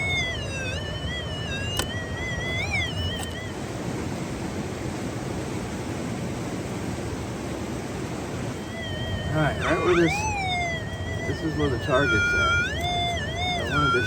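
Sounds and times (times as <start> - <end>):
metal detector warbling tone: 0.0 - 3.5, 8.6 - 14.0.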